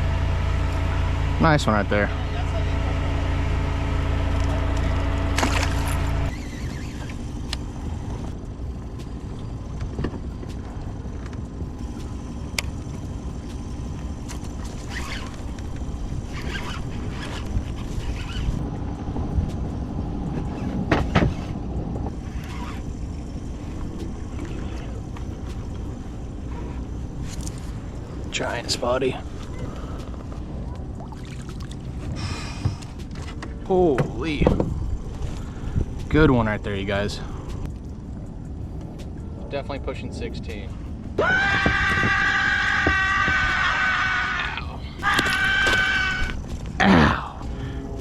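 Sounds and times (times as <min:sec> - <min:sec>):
motor hum: 0:00.0 - 0:48.0
water rumbling: 0:27.7 - 0:35.2
wind noise: 0:29.2 - 0:48.0.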